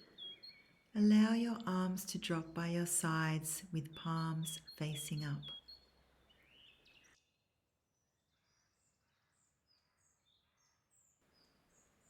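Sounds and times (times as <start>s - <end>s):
faint bird chirps: 0.0s - 1.0s, 1.6s - 7.2s.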